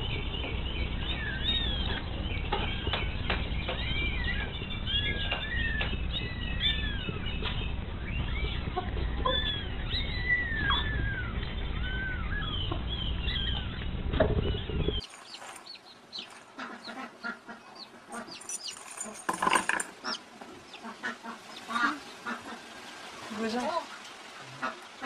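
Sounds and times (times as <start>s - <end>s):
low hum: 0.0s - 15.0s
young birds peeping: 0.0s - 25.0s
rustling: 18.1s - 20.2s.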